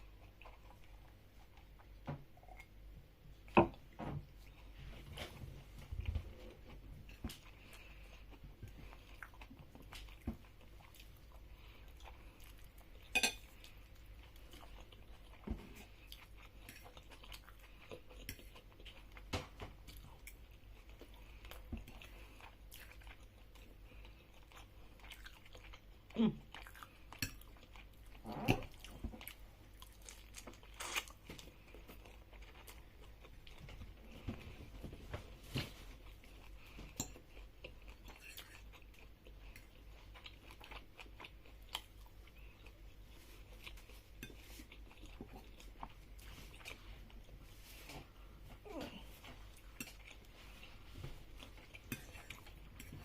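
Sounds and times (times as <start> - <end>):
person chewing food: 0.0 - 53.0.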